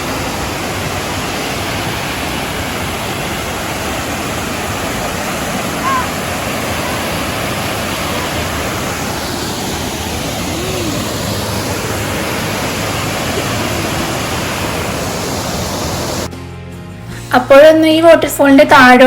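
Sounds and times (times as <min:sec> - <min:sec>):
waterfall rushing: 0:00.0 - 0:16.3.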